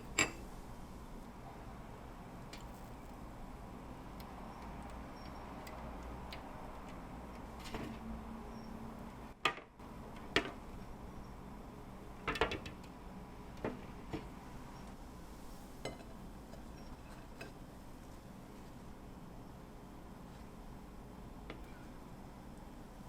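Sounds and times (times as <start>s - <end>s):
dishes and utensils clinking: 0.0s - 0.4s.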